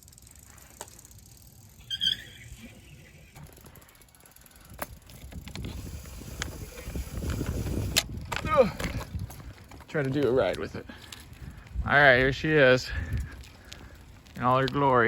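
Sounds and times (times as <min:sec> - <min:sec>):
bicycle squeak: 0:00.0 - 0:04.8, 0:05.6 - 0:08.0
bicycle mechanical clicks: 0:00.0 - 0:11.8, 0:13.1 - 0:15.0
wind and rolling noise: 0:00.0 - 0:15.0.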